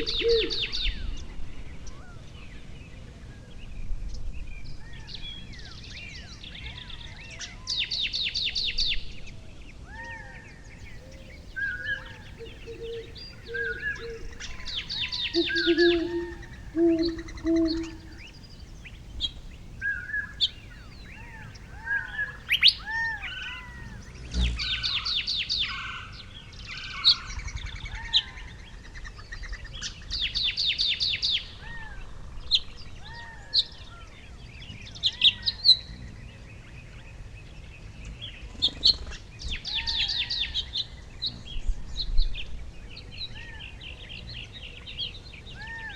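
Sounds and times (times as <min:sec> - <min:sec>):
songbirds trilling and chirping: 0:00.0 - 0:01.2, 0:10.6 - 0:29.1
low background noise: 0:00.0 - 0:24.6.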